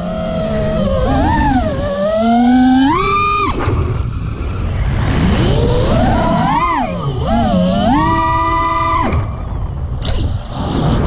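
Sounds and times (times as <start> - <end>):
quadcopter motors whining: 0.0 - 10.5.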